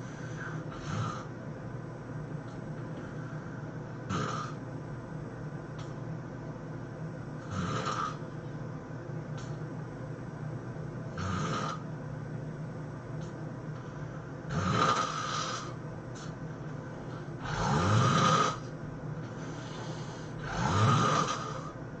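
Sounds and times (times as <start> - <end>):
person snoring: 0.0 - 1.3, 3.0 - 4.6, 7.4 - 8.2, 11.1 - 11.9, 14.5 - 16.3, 17.4 - 18.7, 19.3 - 21.8.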